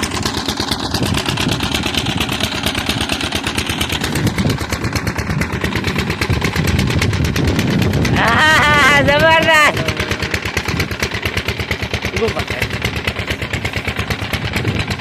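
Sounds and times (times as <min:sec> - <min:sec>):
engine chugging: 0:00.0 - 0:15.0
man speaking: 0:08.2 - 0:10.5.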